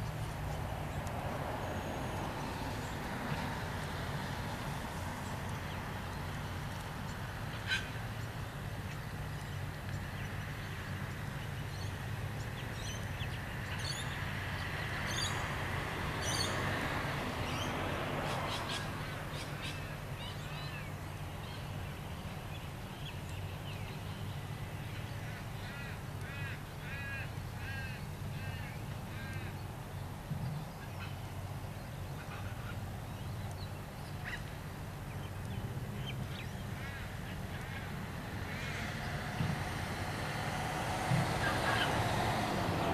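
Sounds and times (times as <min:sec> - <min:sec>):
birds calling: 0:16.2 - 0:16.7, 0:17.4 - 0:39.7.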